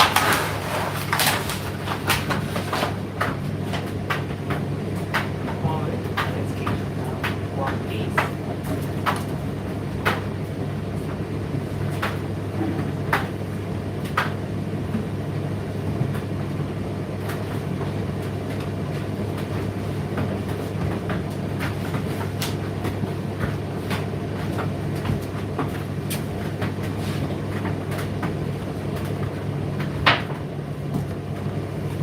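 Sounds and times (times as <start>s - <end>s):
clicks and taps of tumbling load: 0.0s - 10.4s
tumble dryer motor hum: 0.0s - 32.0s.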